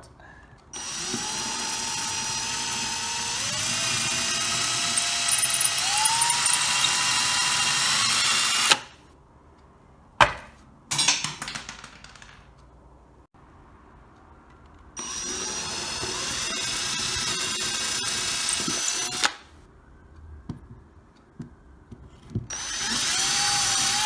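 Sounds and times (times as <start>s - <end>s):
electric drill whining: 0.8s - 8.8s, 15.0s - 19.4s, 22.5s - 24.0s.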